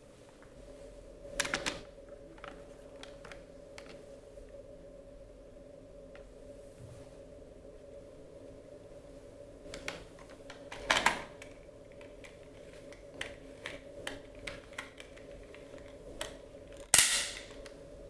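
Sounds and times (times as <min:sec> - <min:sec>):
plastic parts clicking: 0:09.7 - 0:17.8.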